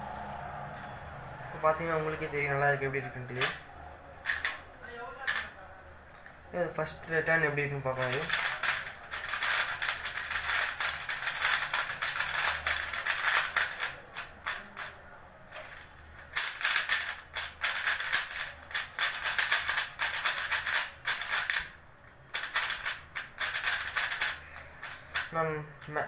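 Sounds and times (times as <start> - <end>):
speed cube clicking: 4.2 - 4.6, 8.0 - 15.0, 15.6 - 26.0.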